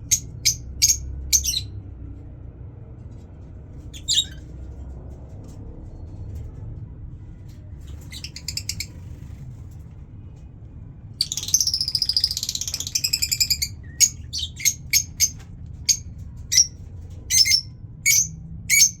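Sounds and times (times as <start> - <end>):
lovebirds chattering and chirping: 0.1 - 1.7, 3.9 - 4.4, 7.9 - 9.1, 11.2 - 19.0.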